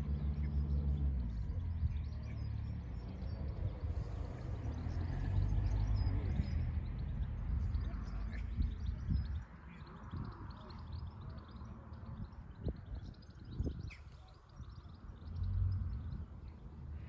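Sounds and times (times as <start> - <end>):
small birds chirping: 0.2 - 17.0.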